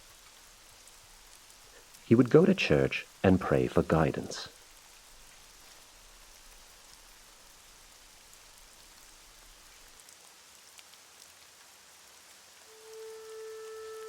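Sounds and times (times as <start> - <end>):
faint steady rain: 0.0 - 14.0
held musical note: 12.7 - 14.0.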